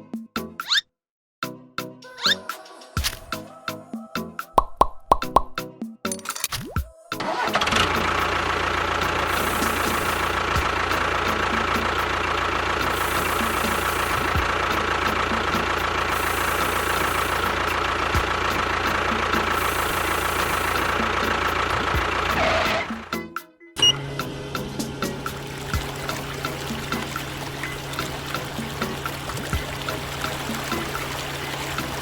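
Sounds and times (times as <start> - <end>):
small motor whining: 9.0 - 11.2, 12.8 - 15.0, 15.8 - 23.0.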